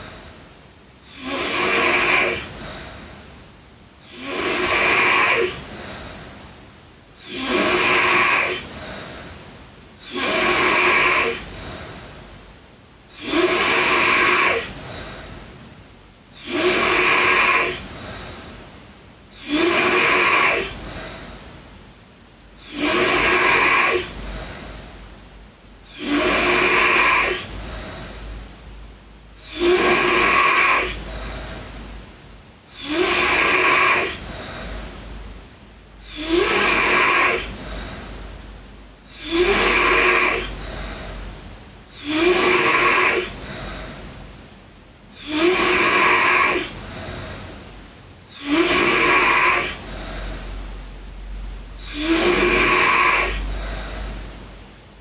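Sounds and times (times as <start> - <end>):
girl snoring: 1.0 - 3.2, 4.0 - 6.3, 7.2 - 9.3, 10.0 - 12.3, 13.1 - 15.5, 16.3 - 18.5, 19.3 - 21.4, 22.6 - 25.1, 25.8 - 28.4, 29.3 - 32.0, 32.7 - 35.4, 36.0 - 44.0, 45.2 - 47.6, 48.3 - 50.8, 51.7 - 54.2.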